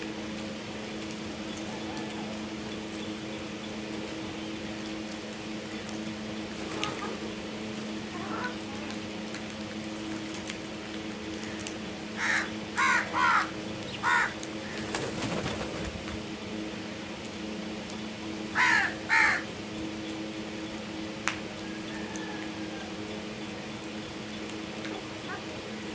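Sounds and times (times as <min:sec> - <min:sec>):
steady background hum: 0:00.0 - 0:25.9
crow cawing: 0:12.2 - 0:14.9, 0:18.5 - 0:19.5.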